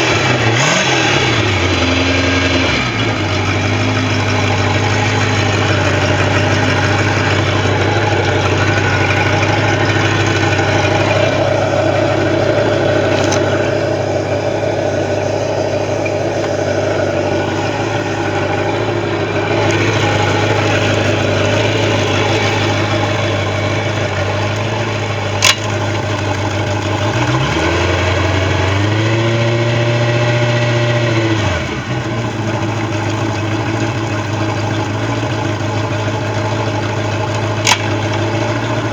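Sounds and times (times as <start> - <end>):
boat engine idling and revving: 0.0 - 38.9
sharp click: 13.1 - 13.7, 25.4 - 25.8, 37.6 - 38.0.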